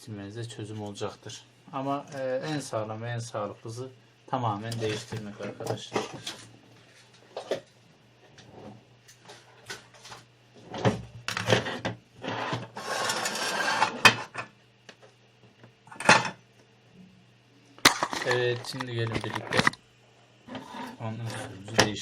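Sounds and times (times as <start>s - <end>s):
scraping and rustling: 8.4s - 14.3s.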